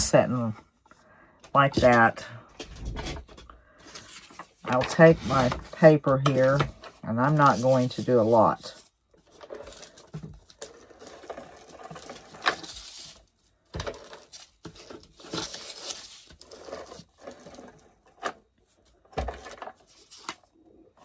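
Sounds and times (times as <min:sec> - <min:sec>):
paper rustling and crinkling: 0:02.6 - 0:17.8.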